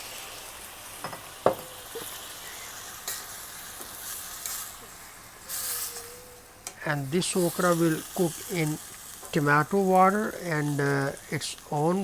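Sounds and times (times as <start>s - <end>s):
okra sizzling in hot oil: 0.0s - 12.0s
spoon knocking against pot: 1.0s - 2.1s.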